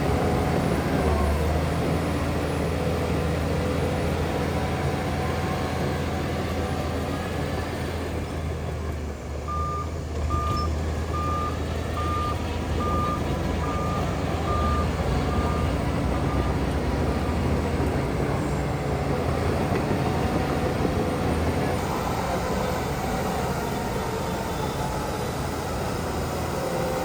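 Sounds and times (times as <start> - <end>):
heavy machine engines running: 0.0 - 27.0
reversing alarm beeping: 9.5 - 16.6.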